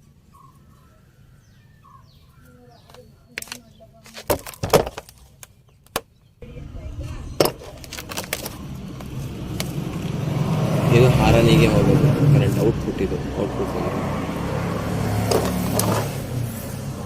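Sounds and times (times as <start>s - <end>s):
steady low rumble: 6.4s - 14.0s
sharp clicks and knocks: 15.2s - 16.1s.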